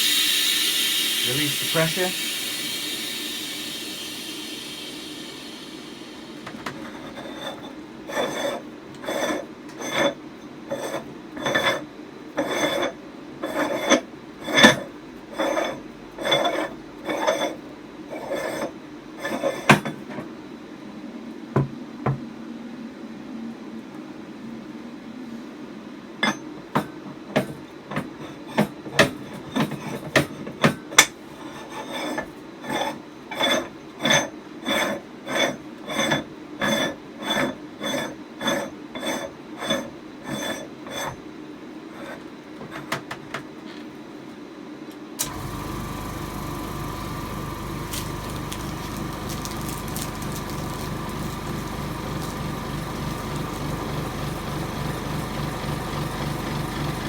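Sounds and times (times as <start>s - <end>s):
air compressor humming: 0.0s - 7.4s, 45.2s - 57.0s.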